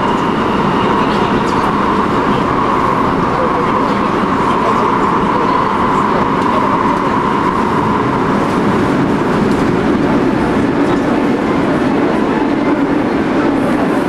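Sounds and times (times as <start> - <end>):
subway train rumble: 0.0 - 14.0.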